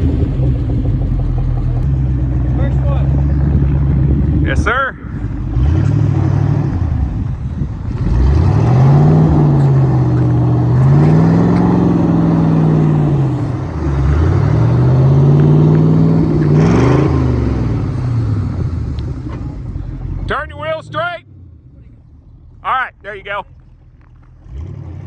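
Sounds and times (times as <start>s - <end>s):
car engine revving hard: 1.7s - 21.1s, 24.4s - 25.0s.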